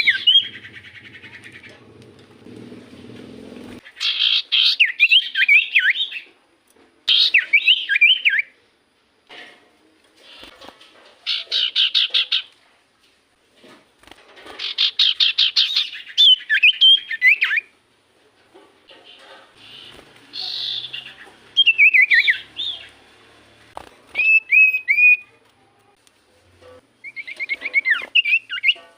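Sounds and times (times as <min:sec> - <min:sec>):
bird chattering and whistling: 0:00.0 - 0:01.8, 0:03.8 - 0:06.3, 0:07.1 - 0:08.6, 0:11.2 - 0:12.5, 0:14.6 - 0:17.7, 0:19.0 - 0:23.0, 0:24.1 - 0:25.4, 0:27.0 - 0:28.9.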